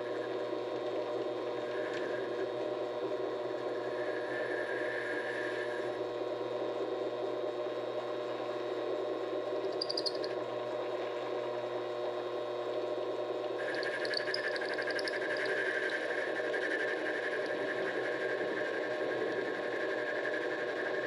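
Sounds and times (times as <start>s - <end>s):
high chatter of lathe: 3.8s - 6.0s, 13.6s - 18.9s
high whine: 9.7s - 10.4s, 13.5s - 21.0s
lathe running: 13.6s - 18.0s.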